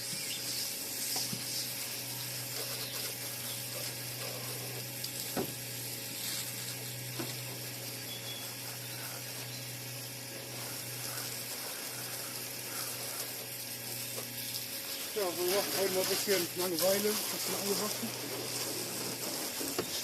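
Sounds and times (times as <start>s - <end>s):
constant low hum: 0.0s - 20.0s
water spraying hiss: 0.0s - 20.0s.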